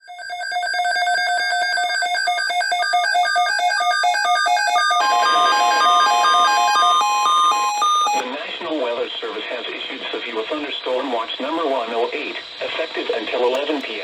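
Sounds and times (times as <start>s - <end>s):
steady alarm tone: 0.0s - 8.2s
rapid electronic beeps: 3.0s - 8.2s.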